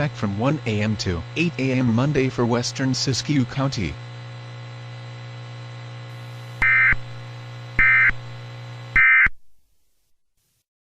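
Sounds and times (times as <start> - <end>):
broadcast hum and hiss: 0.0 - 9.3
digital data tone bursts: 6.6 - 7.0, 7.8 - 8.2.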